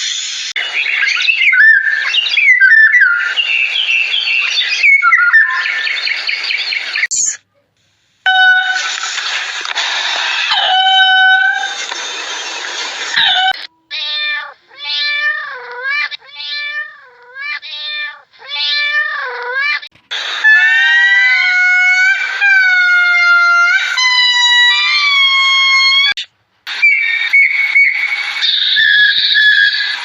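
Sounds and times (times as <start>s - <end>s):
cat meowing: 13.2s - 26.2s.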